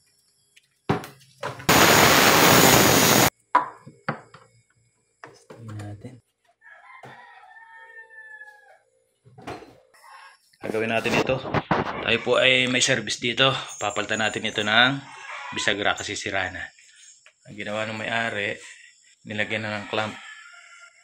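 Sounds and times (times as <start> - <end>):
loud hissing burst: 1.7 - 3.3
rooster crowing: 6.6 - 8.9, 15.0 - 15.9, 19.5 - 21.0.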